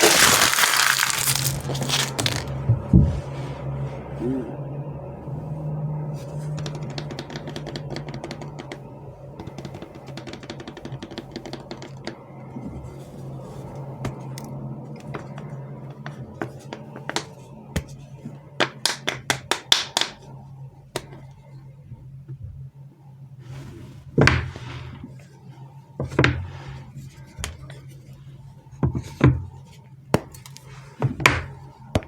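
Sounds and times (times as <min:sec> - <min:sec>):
candy packaging crinkling: 0:00.0 - 0:02.6
steady low hum: 0:01.5 - 0:10.3
rapid taps: 0:06.6 - 0:12.2.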